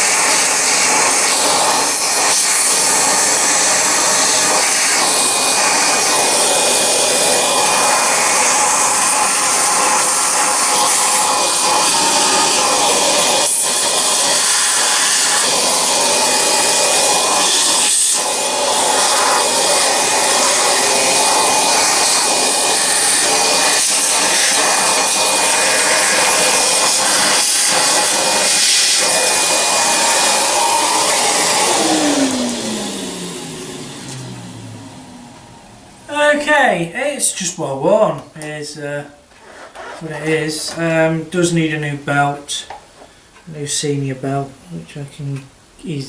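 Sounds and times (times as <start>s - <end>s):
vacuum cleaner running: 0.0s - 36.4s, 39.3s - 40.8s
motor winding down: 10.7s - 36.1s.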